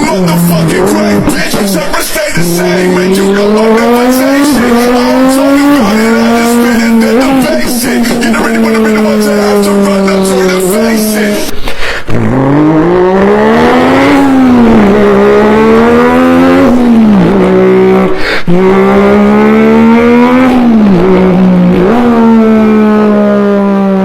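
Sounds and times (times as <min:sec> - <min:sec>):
man imitating car engine: 0:00.0 - 0:24.0.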